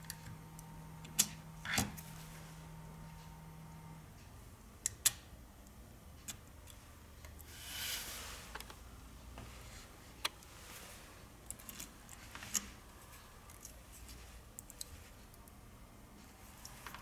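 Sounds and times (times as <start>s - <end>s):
faint steady hum: 0.0s - 17.0s.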